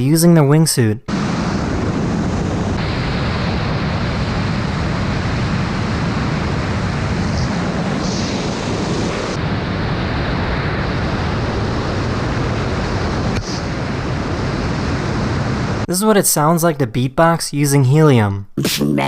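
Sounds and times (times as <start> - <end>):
wind rush on microphone: 1.1 - 15.9.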